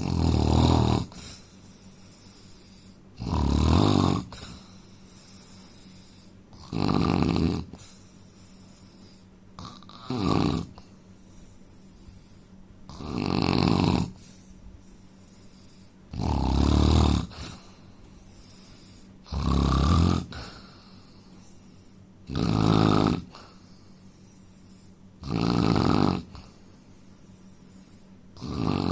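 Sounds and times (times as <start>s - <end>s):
man snoring: 0.0s - 1.5s, 2.2s - 4.7s, 6.1s - 7.9s, 9.6s - 10.9s, 12.9s - 14.4s, 15.6s - 17.7s, 18.4s - 21.0s, 22.2s - 23.7s, 24.8s - 26.6s, 28.4s - 28.9s.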